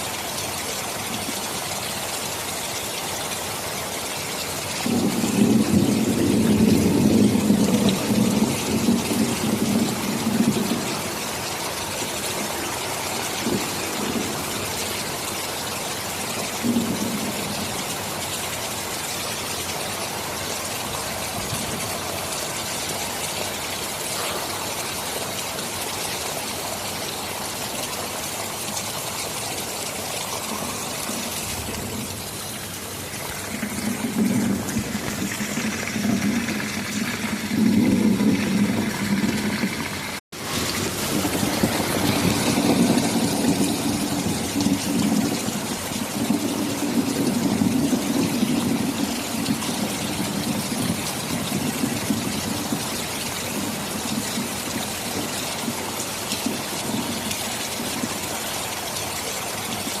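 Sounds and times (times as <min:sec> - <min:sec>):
rain falling: 0:00.0 - 1:00.0
rolling thunder: 0:04.8 - 0:11.5, 0:12.4 - 0:15.1, 0:16.4 - 0:17.9, 0:30.2 - 0:54.6.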